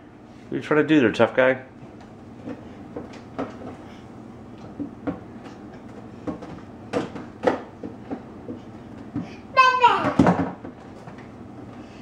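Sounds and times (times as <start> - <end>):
food containers knocking and clattering: 2.4 - 3.9, 4.6 - 9.3, 10.0 - 11.3.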